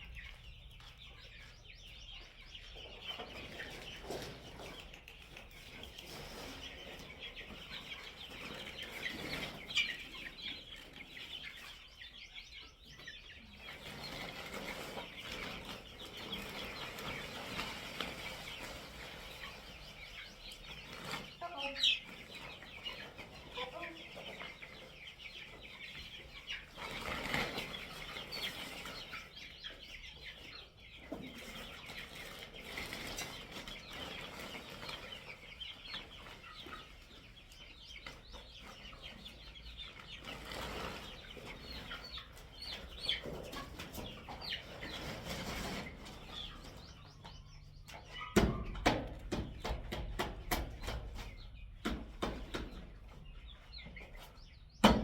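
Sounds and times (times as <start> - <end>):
chickens clucking: 0.0 - 55.0
chicks peeping: 0.0 - 55.0
loud knocks and clatter: 48.3 - 52.9.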